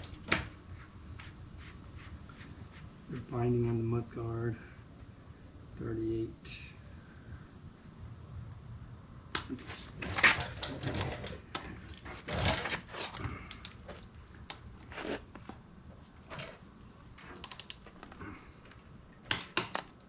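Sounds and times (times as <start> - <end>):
tools knocking and clattering: 9.4 - 13.1
ratchet clicking: 17.4 - 17.8.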